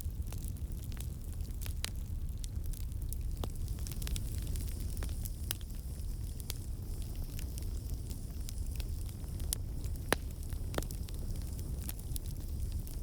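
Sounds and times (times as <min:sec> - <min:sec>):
campfire flames rumbling: 0:00.0 - 0:13.0
wood crackling and popping: 0:00.0 - 0:13.0.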